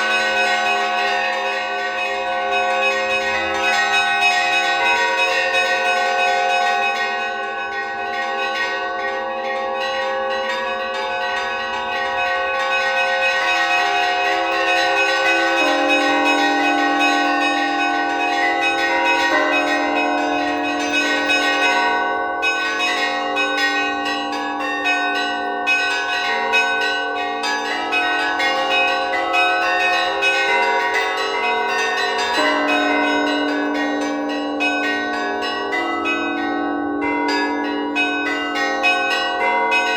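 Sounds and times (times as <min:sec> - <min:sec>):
deep bell: 0:00.0 - 0:39.9
larger bells ringing: 0:00.0 - 0:39.9.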